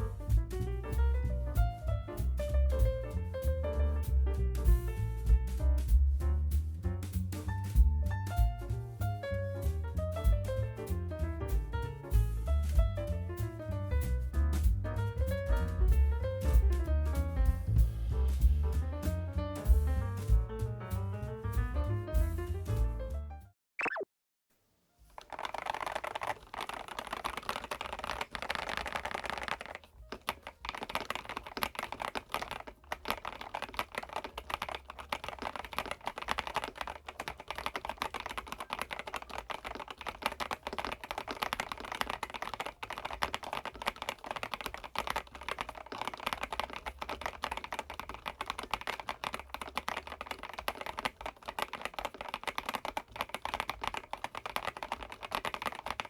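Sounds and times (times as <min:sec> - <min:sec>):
mechanical keyboard typing: 0:25.2 - 0:56.0.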